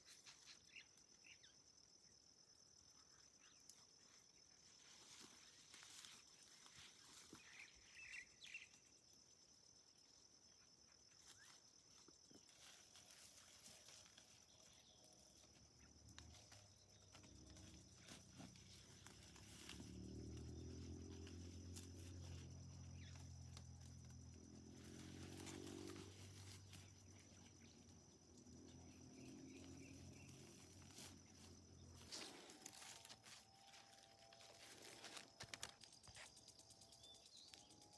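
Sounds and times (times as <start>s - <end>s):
insect chirps: 0.0s - 37.9s
insects pulsing drone: 0.0s - 37.9s
low motor hum: 15.7s - 33.3s.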